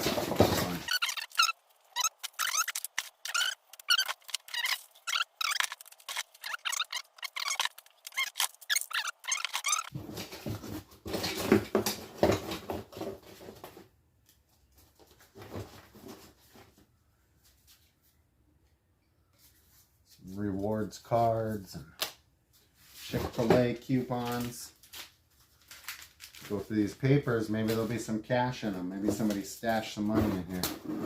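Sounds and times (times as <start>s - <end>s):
paper rustling and crinkling: 0.0s - 13.8s, 23.0s - 27.0s.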